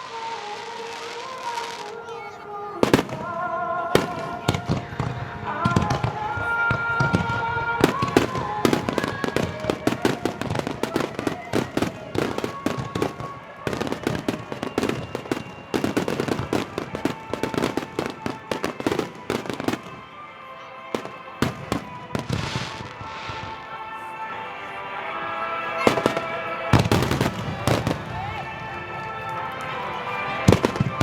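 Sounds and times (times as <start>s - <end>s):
fireworks bangs and crackling: 0.0s - 31.0s.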